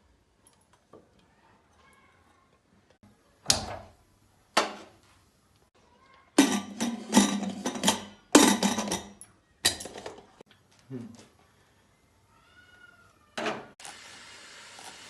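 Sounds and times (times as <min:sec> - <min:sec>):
utensils and dishes clattering: 0:06.4 - 0:10.4.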